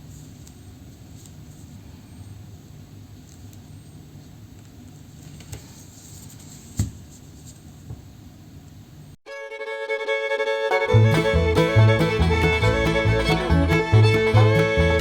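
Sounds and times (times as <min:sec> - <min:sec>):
low beat: 0:10.8 - 0:15.0.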